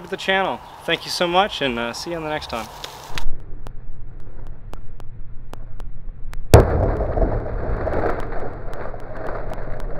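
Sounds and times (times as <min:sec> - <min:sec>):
rumbling noise: 0:03.2 - 0:09.9
sharp bang: 0:06.5 - 0:07.7.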